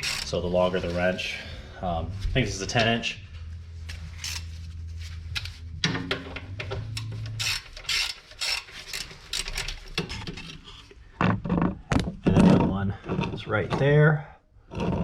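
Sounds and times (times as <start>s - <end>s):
ratchet wrench clicking: 0.0s - 0.4s, 4.2s - 4.5s, 6.9s - 10.2s
metal scraping: 0.0s - 11.6s
steady low hum: 0.0s - 13.6s.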